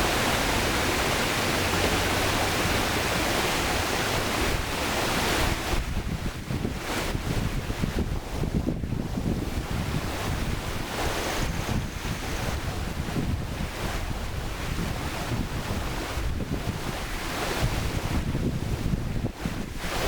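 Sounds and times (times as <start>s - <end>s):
river water rushing over rocks: 0.0s - 7.2s.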